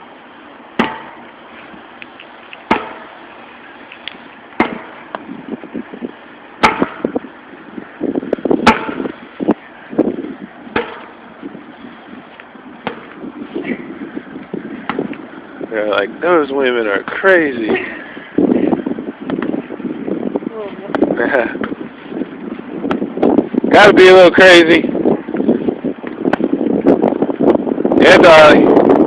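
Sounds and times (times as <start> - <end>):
weight slamming into ground: 4.6 - 5.1, 8.6 - 9.2, 10.7 - 11.2.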